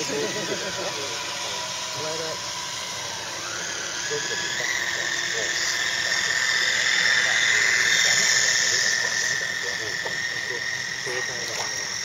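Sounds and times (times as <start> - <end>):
model boat electric motor whining: 0.0 - 12.0.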